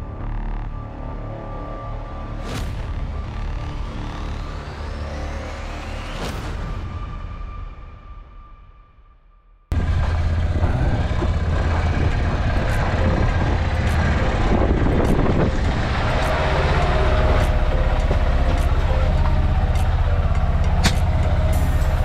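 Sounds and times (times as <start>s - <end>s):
utility vehicle engine running: 9.7s - 22.0s.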